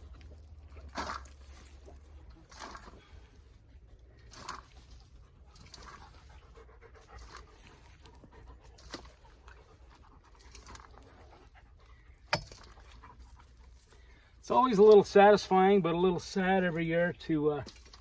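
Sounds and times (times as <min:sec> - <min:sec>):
dog panting softly: 0:05.2 - 0:12.2.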